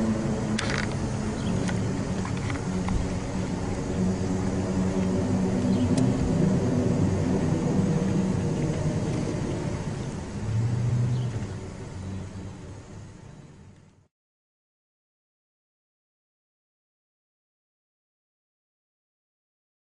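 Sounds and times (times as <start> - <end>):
low droning rumble: 0.0 - 14.1.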